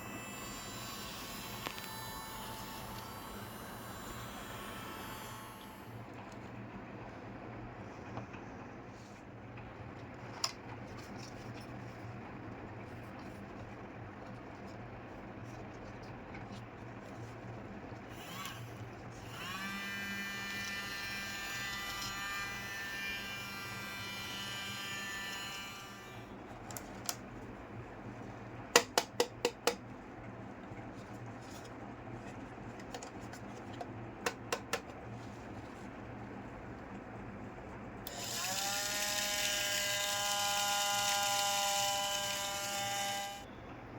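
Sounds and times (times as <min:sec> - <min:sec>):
toy motor whirring: 0:00.0 - 0:05.9, 0:18.1 - 0:26.2, 0:38.0 - 0:43.5.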